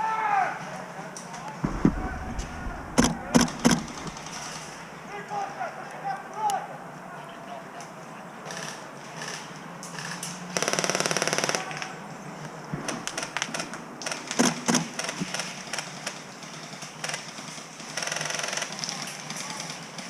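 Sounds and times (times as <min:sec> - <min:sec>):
sharp cracks of shots: 0:01.6 - 0:05.0
airsoft gun full-auto burst: 0:15.0 - 0:18.8.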